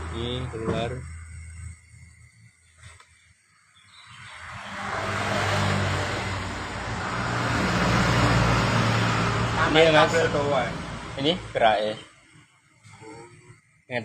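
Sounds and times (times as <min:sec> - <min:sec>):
car engine revving: 0:04.1 - 0:12.0.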